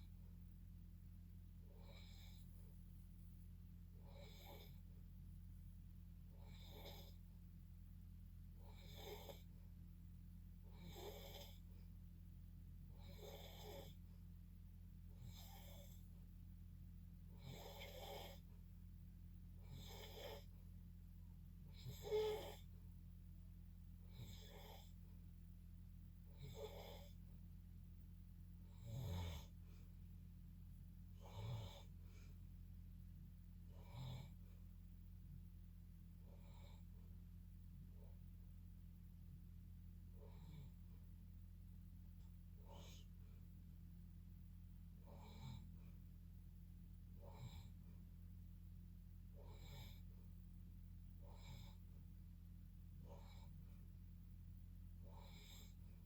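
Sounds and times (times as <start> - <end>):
steady low hum: 0.0 - 56.0
faint snoring: 1.6 - 2.7, 3.9 - 5.0, 6.2 - 7.4, 8.5 - 9.7, 10.6 - 11.9, 12.9 - 14.2, 15.0 - 16.3, 17.2 - 18.6, 19.5 - 20.7, 21.6 - 22.8, 24.0 - 25.2, 26.2 - 27.3, 28.6 - 30.0, 31.0 - 32.4, 33.6 - 34.7, 36.2 - 37.1, 40.0 - 41.1, 42.2 - 43.4, 45.0 - 46.3, 47.1 - 48.0, 48.6 - 50.2, 51.2 - 52.0, 52.9 - 53.9, 54.9 - 56.0.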